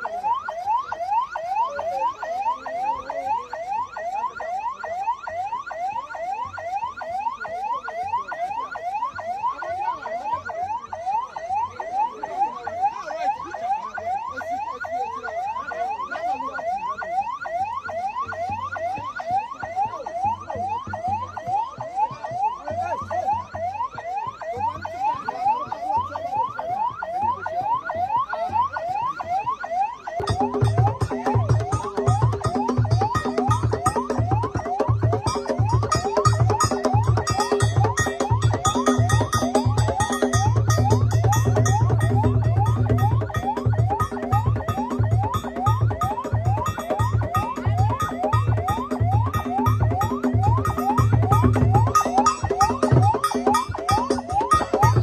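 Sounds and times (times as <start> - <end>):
electronic siren sweeping: 0.0 - 55.0
music with heavy low beat: 30.2 - 55.0.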